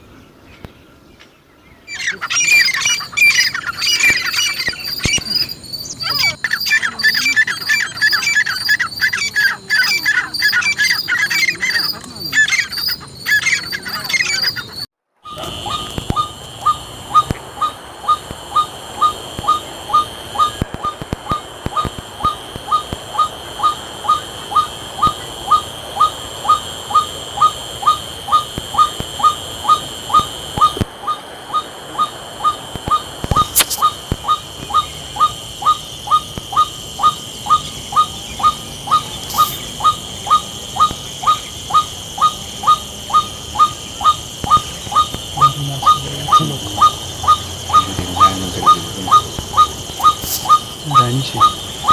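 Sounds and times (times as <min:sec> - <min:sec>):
bird whistling single note: 0:15.2 - 0:21.0.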